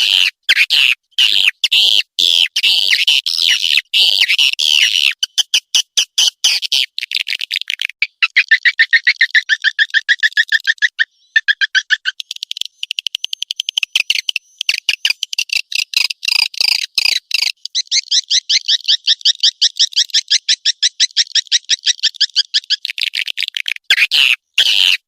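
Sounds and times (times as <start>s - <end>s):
swiftlet call recording: 2.9s - 19.2s.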